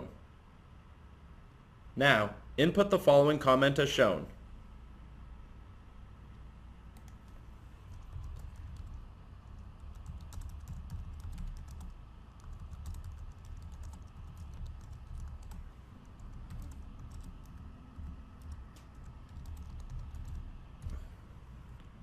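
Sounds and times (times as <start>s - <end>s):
low steady rumble: 0.0s - 22.0s
keyboard typing clicks: 6.9s - 21.0s.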